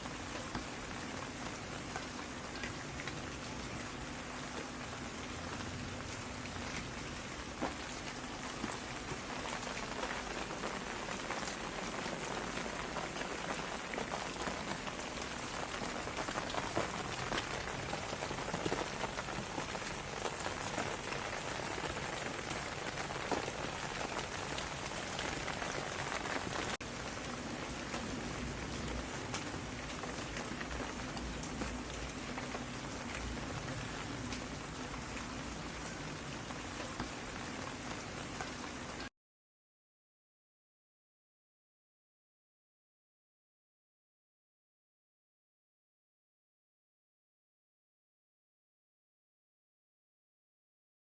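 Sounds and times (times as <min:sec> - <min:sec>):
rain on a hard surface: 0:00.0 - 0:39.1.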